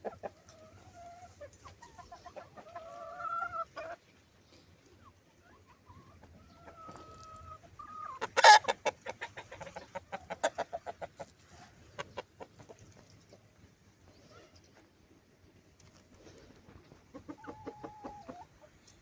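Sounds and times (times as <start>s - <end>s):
chicken squawk: 0.0s - 4.0s, 5.4s - 12.7s, 16.9s - 18.7s
chickens clucking: 0.0s - 19.0s.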